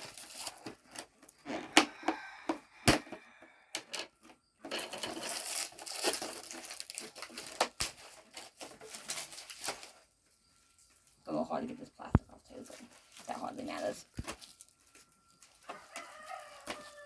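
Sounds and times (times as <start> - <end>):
plastic film peeling and crinkling: 0.0 - 2.0, 4.7 - 10.1, 12.3 - 17.0.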